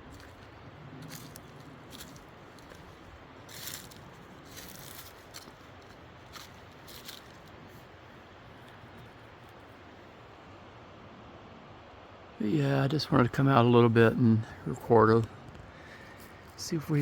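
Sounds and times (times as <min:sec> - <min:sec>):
footsteps through dry leaves: 0:00.0 - 0:08.0
faint outdoor hiss: 0:00.0 - 0:17.0.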